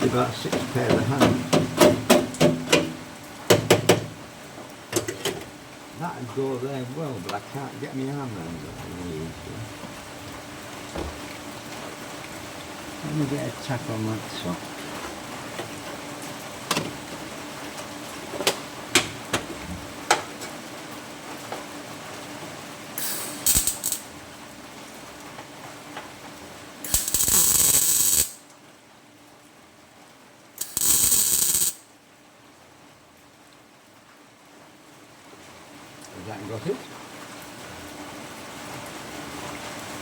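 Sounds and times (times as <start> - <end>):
welding arc sputtering: 23.0 - 24.1, 26.8 - 28.4, 30.6 - 31.8
welding crackling bursts: 23.0 - 24.1, 26.8 - 28.4, 30.6 - 31.8.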